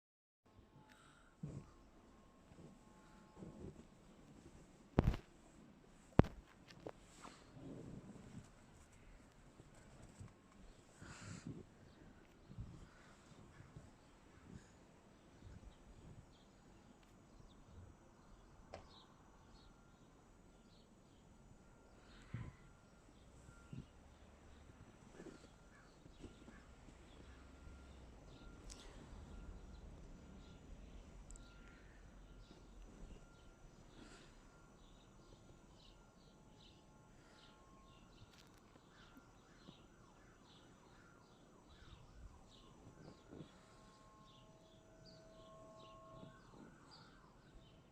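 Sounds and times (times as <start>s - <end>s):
faint high chirps: 10.8s - 47.9s.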